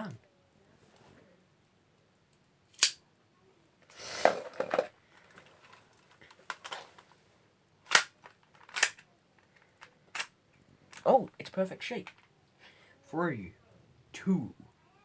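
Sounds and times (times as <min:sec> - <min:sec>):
rustling and scraping: 0:03.9 - 0:07.3.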